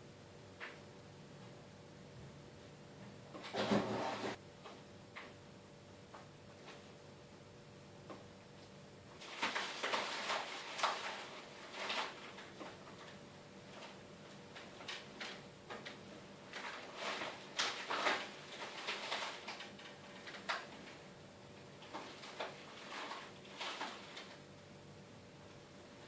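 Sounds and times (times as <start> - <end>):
faint steady hum: 0.0 - 26.0
drawers or doors clicking and scraping: 3.4 - 4.4.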